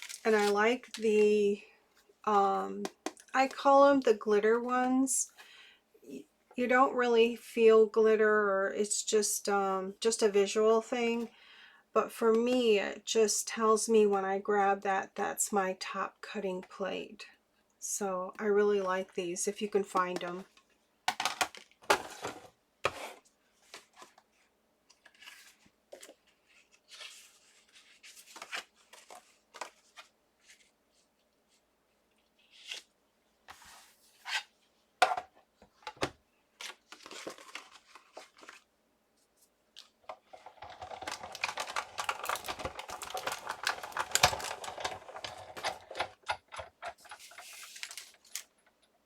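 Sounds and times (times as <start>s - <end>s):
paper rustling: 0.0s - 1.0s, 36.6s - 46.1s, 47.0s - 48.6s.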